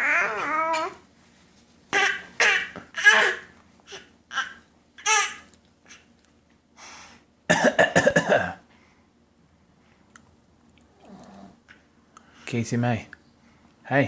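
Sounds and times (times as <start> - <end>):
quick coughs: 7.5 - 8.6.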